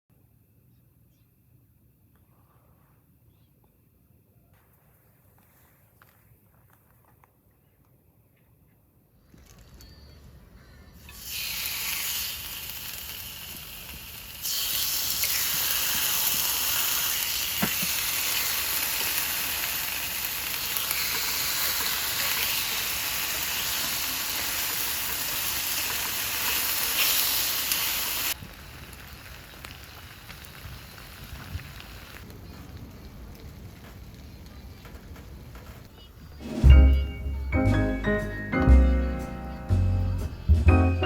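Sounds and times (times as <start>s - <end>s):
food sizzling in a pan: 11.0s - 32.6s.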